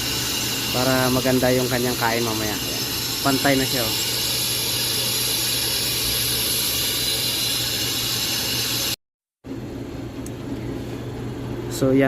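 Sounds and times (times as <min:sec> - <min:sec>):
lathe motor hum: 0:00.0 - 0:09.0.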